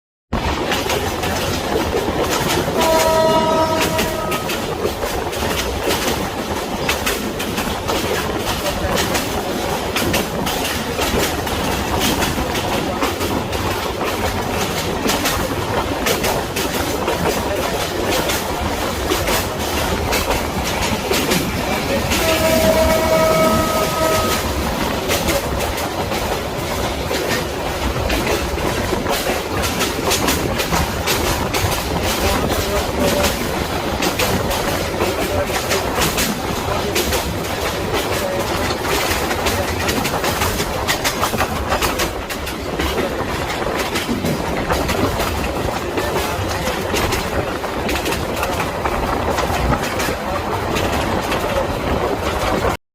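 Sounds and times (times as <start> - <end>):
train wheels clacking on rails: 0.4 - 52.8
train horn chord: 2.7 - 4.7, 22.0 - 24.6.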